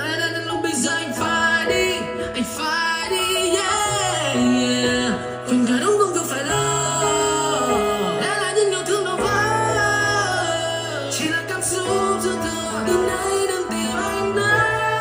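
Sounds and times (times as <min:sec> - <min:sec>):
person singing melismatic vocals: 0:00.0 - 0:15.0
sustained bass notes: 0:03.5 - 0:15.0.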